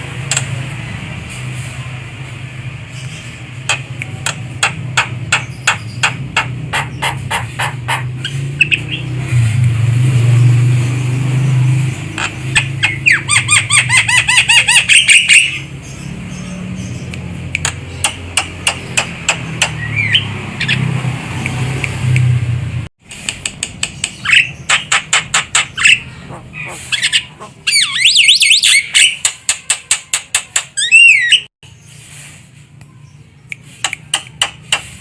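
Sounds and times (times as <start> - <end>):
bird clicking calls: 0.3 - 0.5, 3.0 - 9.0, 12.1 - 15.5, 17.0 - 22.4, 23.2 - 31.4, 33.4 - 35.0
bird chirps: 2.9 - 9.2, 12.2 - 20.9, 23.9 - 29.6, 30.8 - 32.2.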